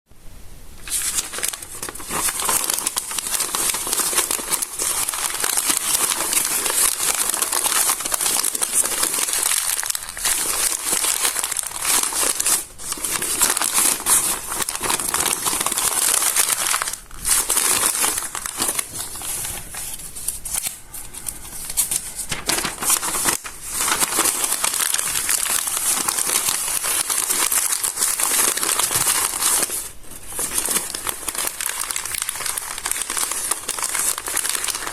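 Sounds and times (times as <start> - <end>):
stiff paper pages crinkling: 0.8 - 34.9.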